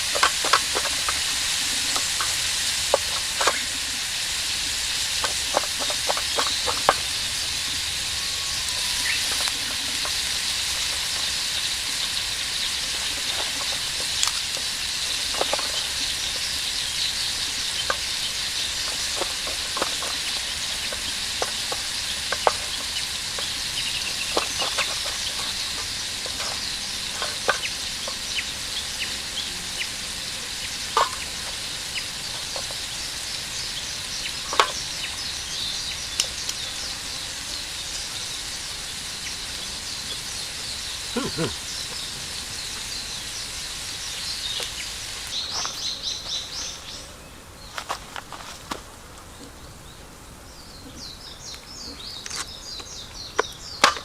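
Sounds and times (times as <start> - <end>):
sharp pops and clicks: 0.0 - 7.4, 8.7 - 28.7
food sizzling in a frying pan: 0.0 - 48.5.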